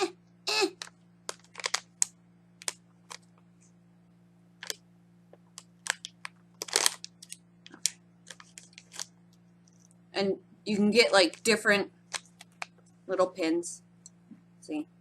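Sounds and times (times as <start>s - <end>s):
faint electrical hum: 0.0s - 15.0s
packaging rustle: 0.8s - 3.3s, 5.6s - 9.9s, 12.1s - 12.7s
packaging crinkling and clicking: 0.8s - 3.4s, 4.6s - 4.8s, 5.4s - 10.0s, 12.1s - 12.8s.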